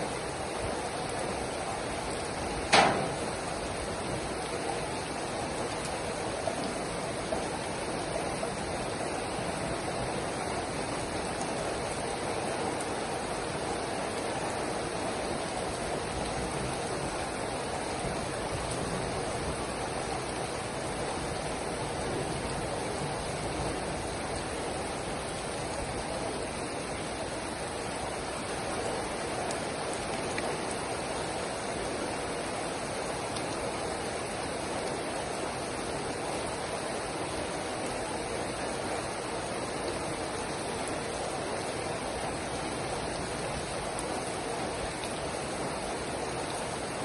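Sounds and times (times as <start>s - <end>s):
steady rain hiss: 0.0s - 47.0s.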